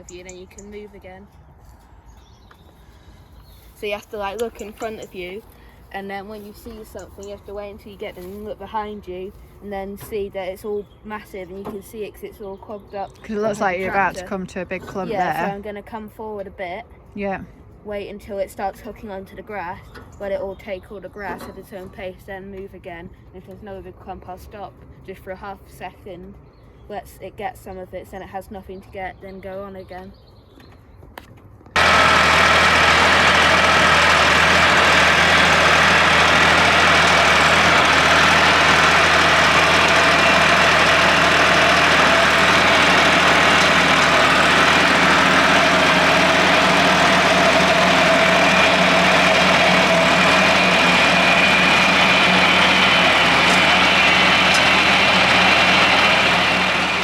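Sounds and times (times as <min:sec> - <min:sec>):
tractor engine running: 0:00.0 - 0:09.5, 0:13.2 - 0:15.6, 0:31.8 - 0:57.0.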